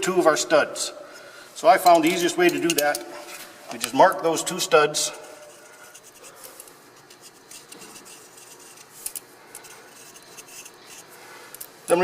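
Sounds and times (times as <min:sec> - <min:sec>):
marker scratching on metal: 0:05.4 - 0:06.4, 0:07.1 - 0:09.0, 0:09.6 - 0:11.1.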